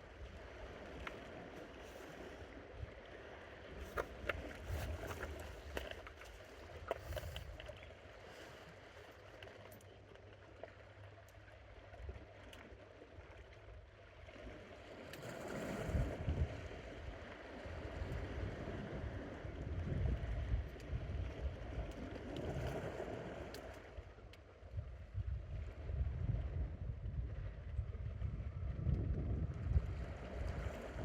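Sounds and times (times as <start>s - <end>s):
sea water washing against rocks: 0.0s - 7.7s
wind rumbling on microphone: 0.0s - 7.9s, 15.2s - 31.0s.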